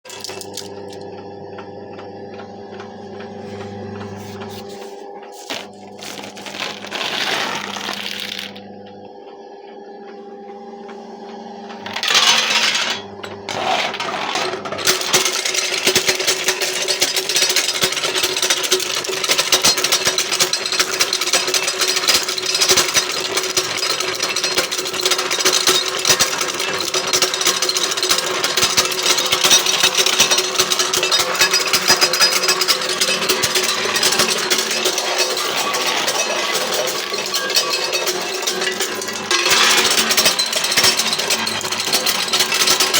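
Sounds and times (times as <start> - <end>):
machine motor humming: 0.1 - 16.9
nuts cracking and shells rattling: 5.5 - 8.6.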